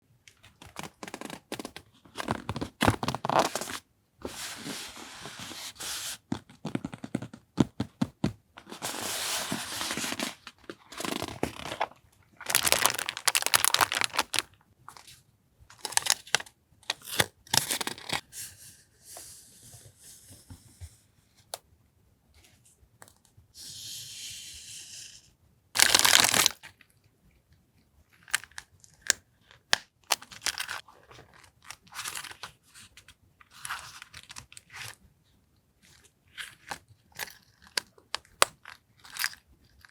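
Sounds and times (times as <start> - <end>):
paper and packaging rustling: 0.5 - 18.2, 25.8 - 26.6, 28.3 - 35.0.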